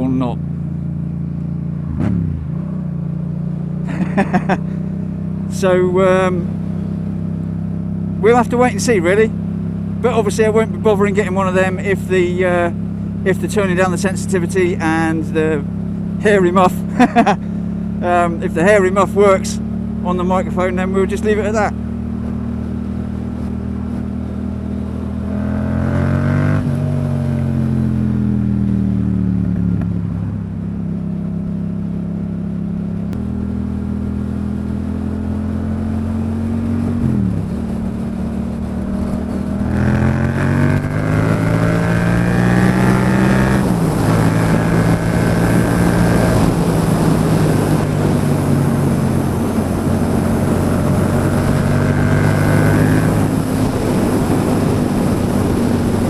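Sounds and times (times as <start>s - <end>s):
motorcycle engine accelerating: 0.0s - 56.0s
wind rushing over microphone: 34.1s - 56.0s.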